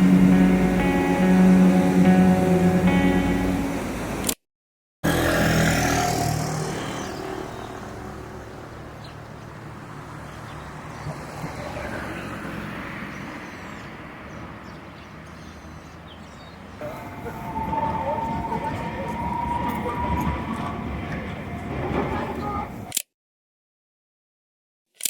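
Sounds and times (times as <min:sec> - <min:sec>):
road traffic hum: 0:00.0 - 0:04.4, 0:05.0 - 0:23.0
vehicle passing close by: 0:05.0 - 0:22.0.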